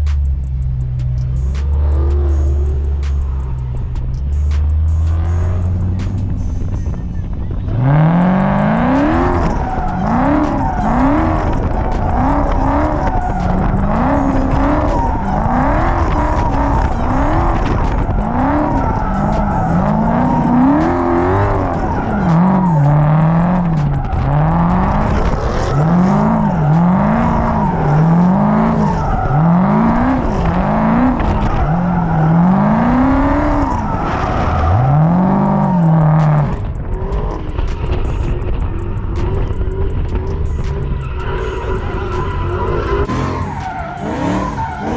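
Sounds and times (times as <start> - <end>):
car engine revving: 0.0 - 44.9
tyres squealing: 0.0 - 44.9.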